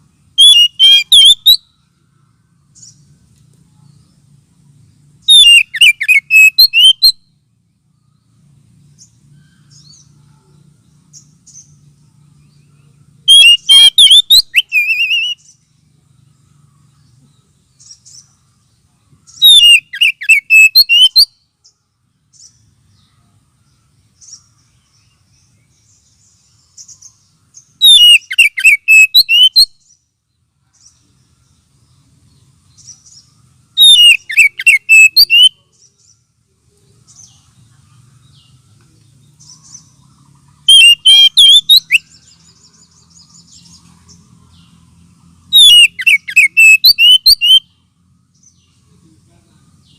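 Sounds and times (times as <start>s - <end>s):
bird chirps and whistles: 0.4s - 1.7s, 5.3s - 7.3s, 13.3s - 15.5s, 19.3s - 21.3s, 27.8s - 29.8s, 33.8s - 35.6s, 40.7s - 42.3s, 45.5s - 47.7s.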